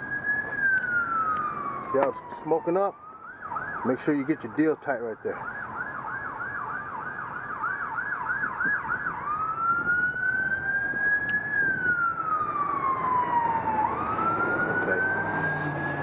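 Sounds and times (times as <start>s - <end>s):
emergency siren yelp and wail: 0.0s - 16.0s.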